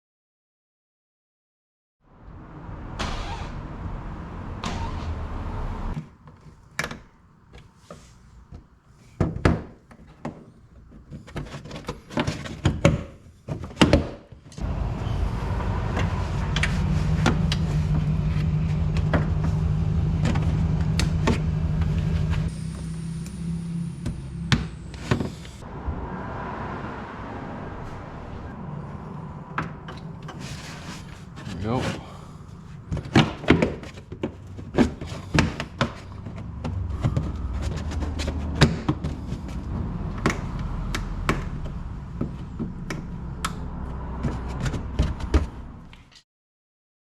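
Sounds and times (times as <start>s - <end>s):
car engine humming: 2.1s - 9.2s, 14.6s - 46.0s
car doors clicking and knocking: 3.0s - 6.0s.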